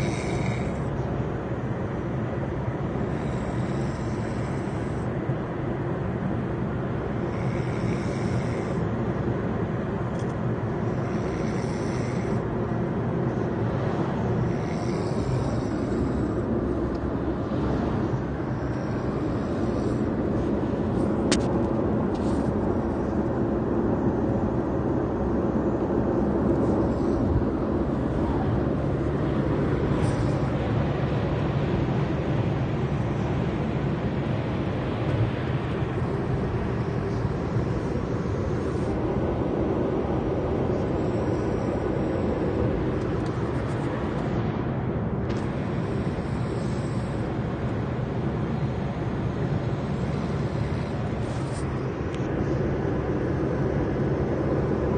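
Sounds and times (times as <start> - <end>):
man snoring loudly: 0.0 - 0.9, 3.0 - 5.0, 7.2 - 8.8, 10.9 - 12.4, 14.4 - 16.4.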